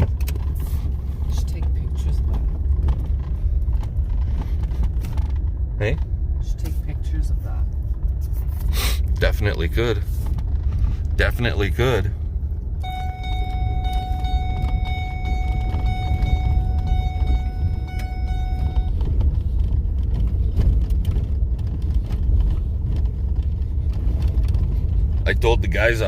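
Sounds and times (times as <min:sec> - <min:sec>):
vehicle rumble: 0:00.0 - 0:26.0
steady high tone: 0:12.8 - 0:19.0.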